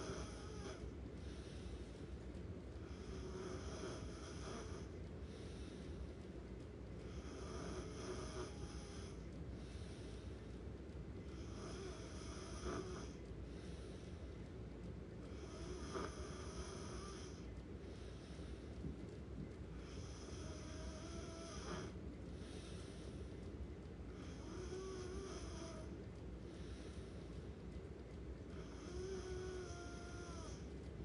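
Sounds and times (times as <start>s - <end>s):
person snoring: 7.2s - 9.2s, 11.4s - 13.2s, 15.4s - 17.4s.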